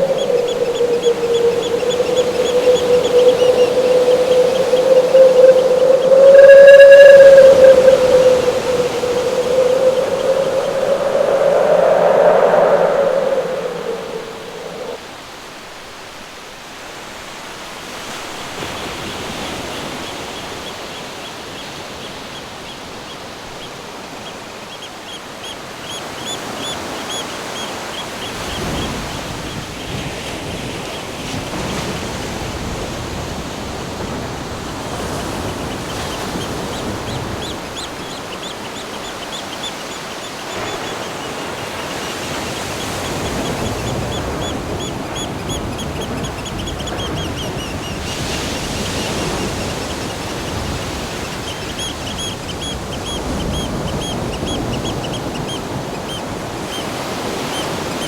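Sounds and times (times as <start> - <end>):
ocean surf: 0.0 - 15.5
wind: 0.0 - 58.0.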